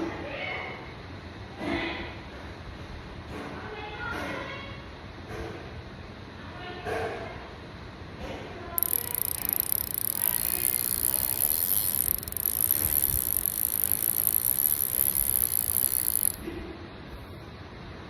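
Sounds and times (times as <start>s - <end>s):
fishing reel clicking: 8.8s - 16.4s.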